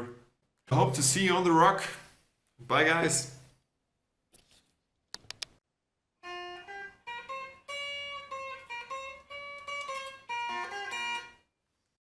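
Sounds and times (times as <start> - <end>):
plucked guitar melody: 6.2 - 11.5.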